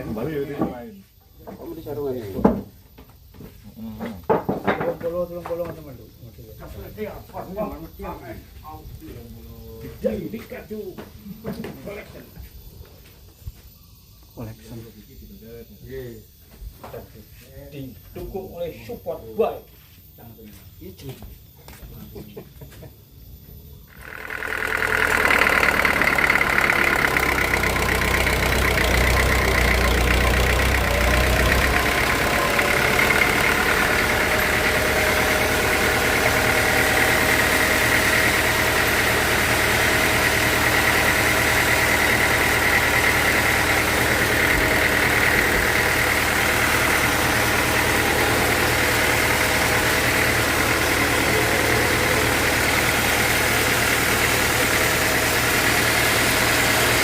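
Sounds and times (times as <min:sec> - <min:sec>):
sawmill machinery hum: 0:00.0 - 0:00.8, 0:23.9 - 0:57.0
high steady whine: 0:23.3 - 0:55.1.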